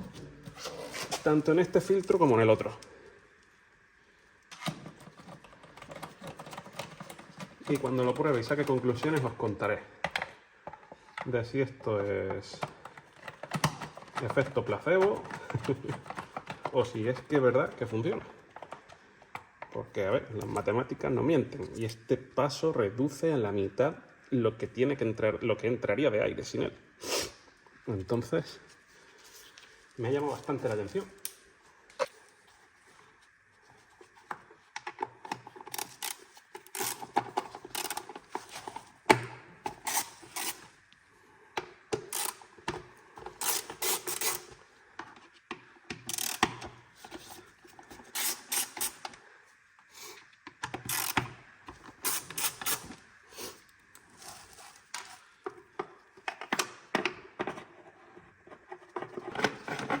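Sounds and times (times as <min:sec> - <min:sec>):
ratchet wrench clicking: 0:35.7 - 0:37.1, 0:37.8 - 0:38.1, 0:39.8 - 0:40.6, 0:42.0 - 0:42.4, 0:43.4 - 0:44.5, 0:46.1 - 0:46.5, 0:48.2 - 0:49.0, 0:50.9 - 0:51.2, 0:52.0 - 0:52.8.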